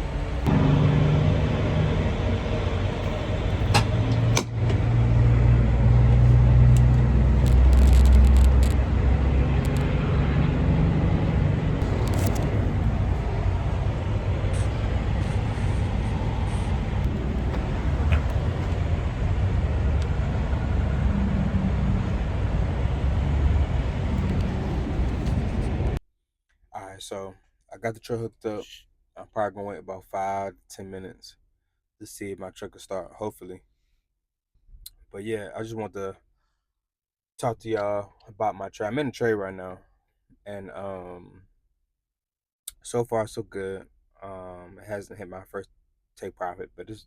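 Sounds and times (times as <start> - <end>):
engine running: 0.0 - 26.0.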